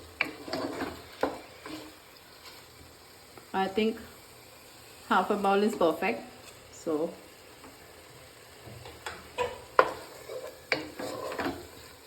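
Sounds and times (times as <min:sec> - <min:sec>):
masala sizzling in a pan: 0:00.0 - 0:12.0
spoon stirring: 0:00.2 - 0:02.7, 0:09.4 - 0:11.7
spoon knocking against pan: 0:08.8 - 0:10.1, 0:10.7 - 0:11.6.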